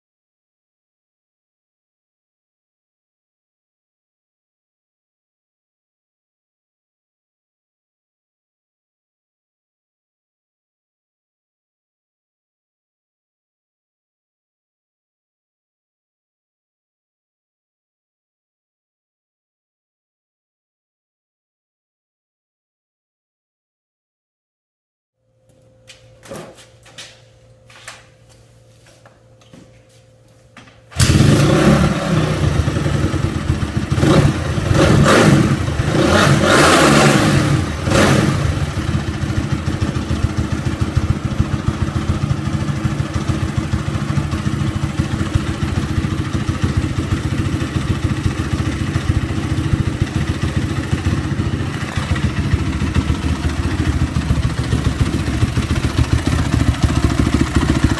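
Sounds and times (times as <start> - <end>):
dirt bike engine starting and idling: 30.6 - 57.9.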